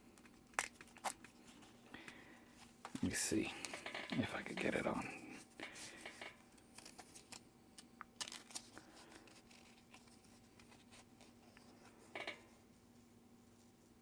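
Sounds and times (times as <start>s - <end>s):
small clicks and rustles: 5.6s - 12.6s.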